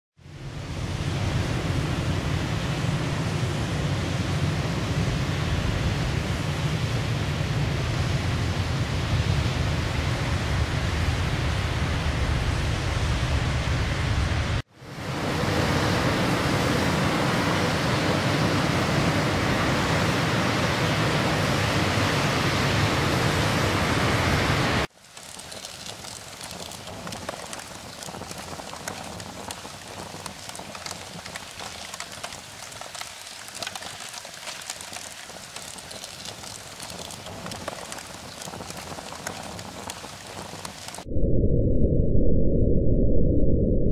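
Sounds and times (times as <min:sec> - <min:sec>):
water drops pattering: 0:25.1 - 0:41.0.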